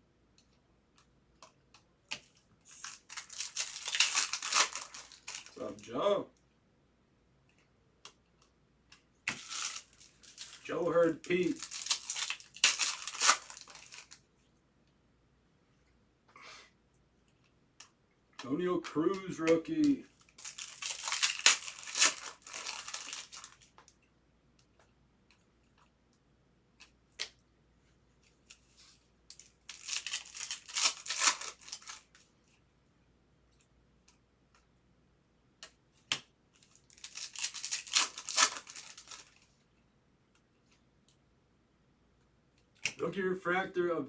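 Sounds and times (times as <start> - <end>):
wrappers rustling and tearing: 2.2 - 5.8, 9.3 - 14.2, 19.8 - 23.8, 28.3 - 32.2, 36.6 - 39.5.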